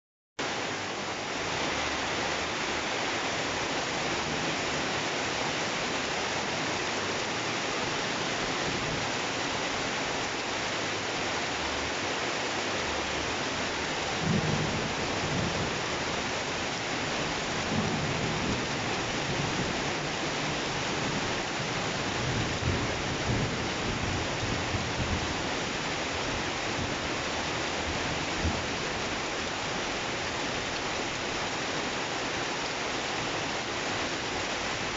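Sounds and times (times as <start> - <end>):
heavy rain: 0.4 - 34.9
thunder rumbling: 14.0 - 16.6.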